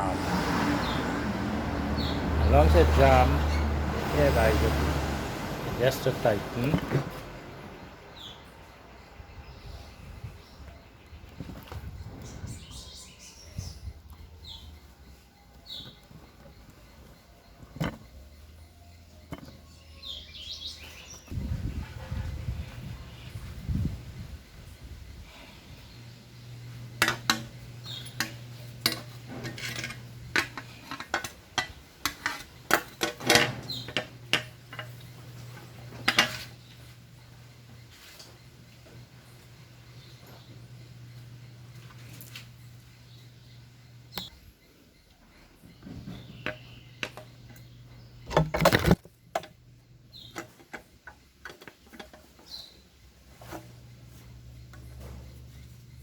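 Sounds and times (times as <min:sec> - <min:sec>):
metal tools clinking and clanking: 0:06.0 - 0:07.2, 0:17.6 - 0:18.6, 0:26.9 - 0:36.9, 0:50.2 - 0:52.7.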